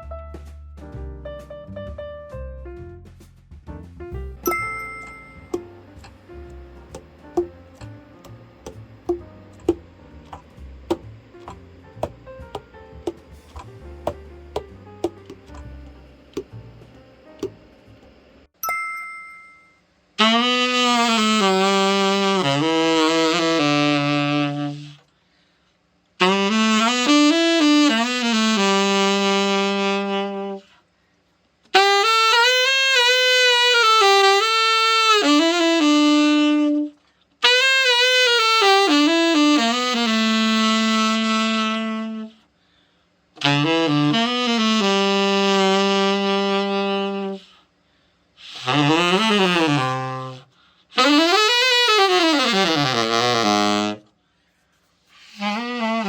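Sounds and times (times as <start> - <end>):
tenor saxophone playing: 4.5 - 16.8, 20.2 - 25.1, 26.2 - 30.8, 31.7 - 42.5, 43.4 - 47.7, 48.4 - 54.2, 55.1 - 56.0.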